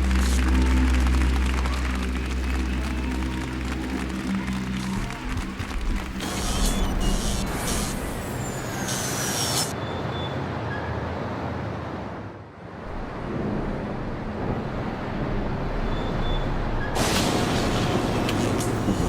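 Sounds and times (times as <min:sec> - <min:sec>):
rumbling vehicle noise: 0:00.0 - 0:10.6, 0:12.9 - 0:19.0.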